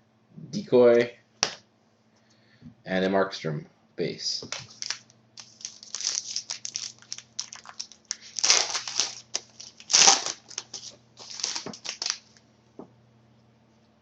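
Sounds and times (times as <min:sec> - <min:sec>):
wrapper tearing and crinkling: 0:04.5 - 0:12.4.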